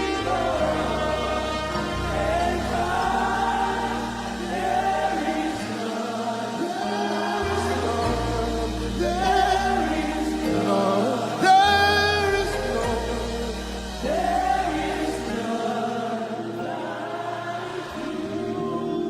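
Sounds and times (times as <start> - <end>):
band bass line: 0.0 - 5.7, 6.7 - 15.8
choir singing: 0.0 - 19.0.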